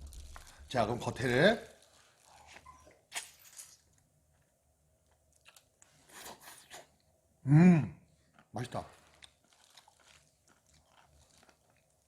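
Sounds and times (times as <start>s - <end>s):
crunching bites of chicken skin: 9.0s - 12.0s.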